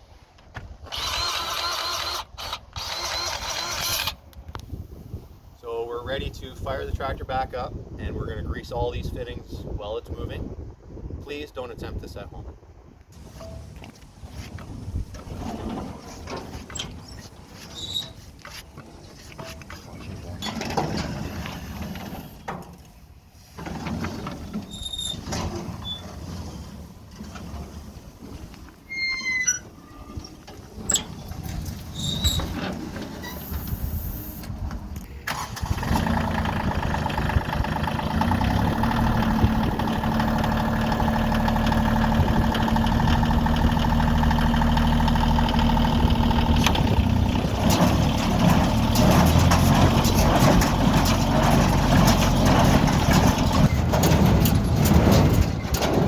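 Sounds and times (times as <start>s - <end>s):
short squeaks: 0.9s - 4.2s, 15.3s - 22.5s, 24.1s - 27.4s, 28.8s - 34.5s
tractor diesel engine running: 13.2s - 56.0s.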